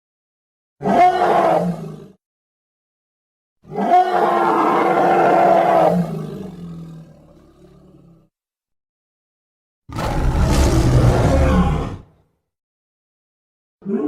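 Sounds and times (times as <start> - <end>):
creature roaring: 3.7 - 8.2, 9.9 - 12.1.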